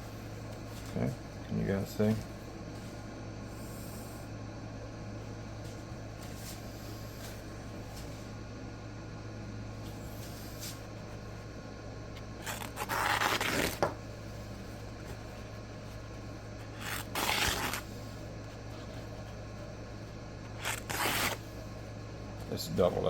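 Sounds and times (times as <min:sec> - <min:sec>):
knife slicing paper: 0:12.4 - 0:13.9, 0:16.7 - 0:18.0, 0:20.5 - 0:21.5.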